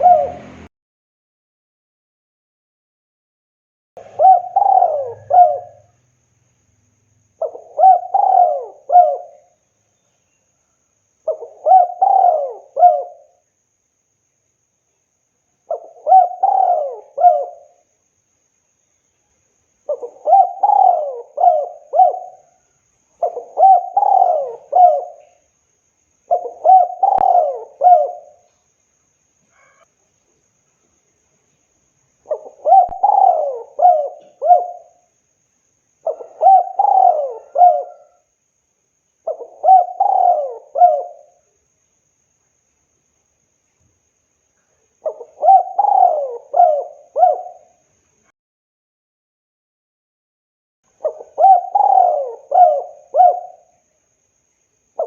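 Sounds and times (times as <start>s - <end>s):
dove cooing: 0.0s - 0.7s, 4.0s - 6.0s, 7.4s - 9.6s, 11.3s - 13.4s, 15.7s - 17.8s, 19.9s - 22.6s, 23.2s - 25.4s, 26.3s - 28.5s, 32.3s - 35.0s, 36.0s - 38.3s, 39.2s - 41.4s, 45.0s - 47.8s, 51.0s - 53.8s.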